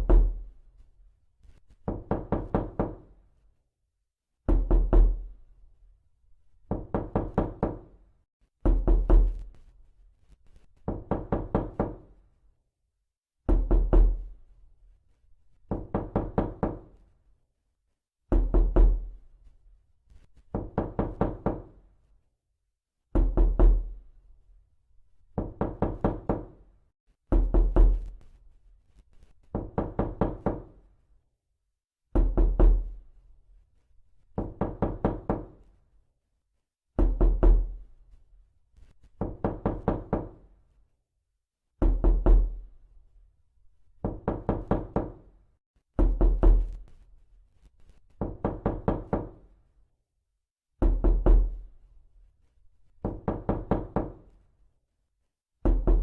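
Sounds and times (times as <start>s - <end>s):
knocking on a door: 0.0s - 0.5s, 1.8s - 3.2s, 4.5s - 5.3s, 6.6s - 7.9s, 8.6s - 9.5s, 10.8s - 12.2s, 13.5s - 14.3s, 15.7s - 17.0s, 18.3s - 19.1s, 20.5s - 21.8s, 23.1s - 24.0s, 25.3s - 26.6s, 27.3s - 28.1s, 29.5s - 30.8s, 32.1s - 33.0s, 34.4s - 35.6s, 37.0s - 37.8s, 39.2s - 40.5s, 41.8s - 42.6s, 44.0s - 45.3s, 46.0s - 46.9s, 48.2s - 49.5s, 50.8s - 51.6s, 53.0s - 54.4s, 55.6s - 56.0s.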